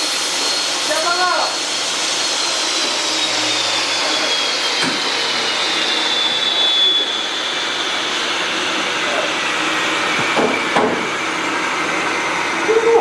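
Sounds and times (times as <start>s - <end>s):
small electric motor whining: 0.0s - 11.6s
knock: 10.2s - 11.1s.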